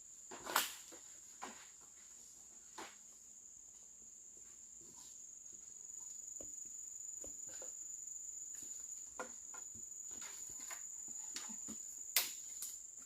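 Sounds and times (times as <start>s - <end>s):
crickets trilling: 4.1s - 13.0s.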